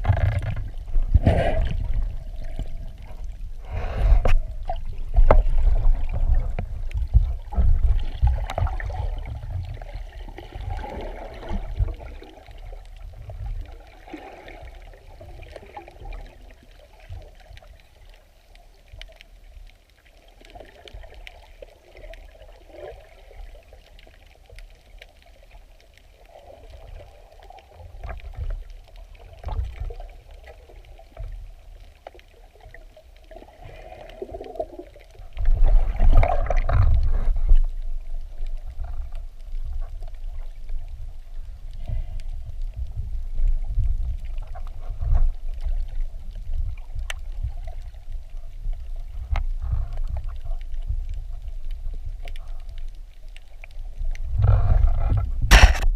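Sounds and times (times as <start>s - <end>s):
underwater water rumble: 0.0s - 55.9s
faint clicks: 36.4s - 48.5s.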